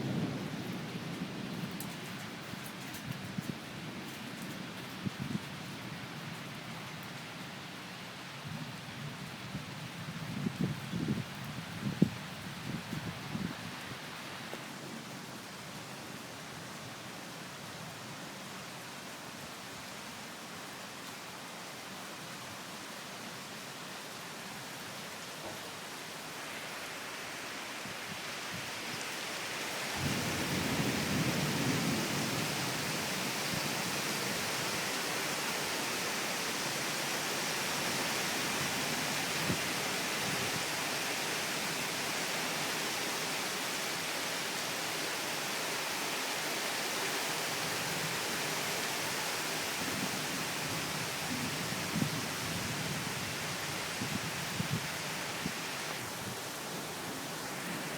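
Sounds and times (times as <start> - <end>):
rain falling: 0.0 - 57.9
thunder rumbling: 30.0 - 33.8.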